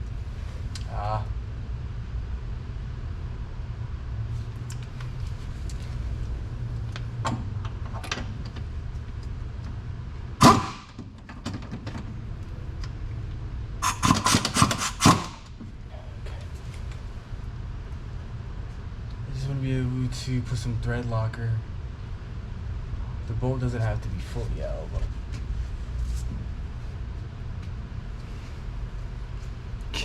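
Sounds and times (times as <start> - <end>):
loud metal clank: 10.4 - 11.0.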